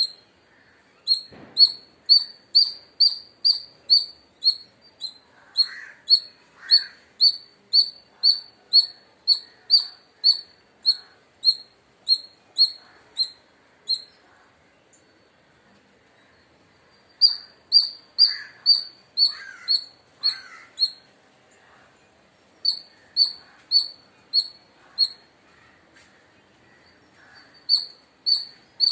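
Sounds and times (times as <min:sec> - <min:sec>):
squirrel alarm call chirps: 0:00.0 - 0:14.2, 0:17.1 - 0:21.1, 0:22.6 - 0:25.3, 0:26.8 - 0:28.9.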